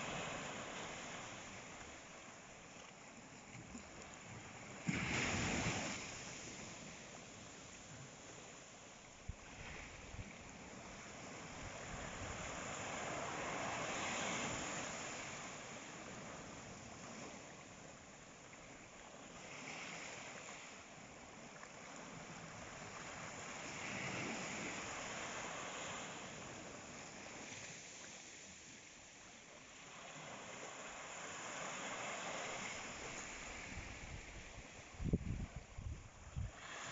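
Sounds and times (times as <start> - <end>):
sea waves washing onto shore: 0.0 - 36.9.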